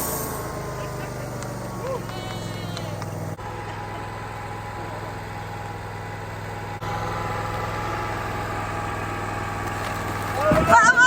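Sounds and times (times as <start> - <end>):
high whine: 0.0 - 7.1
sawmill engine running: 0.0 - 11.0.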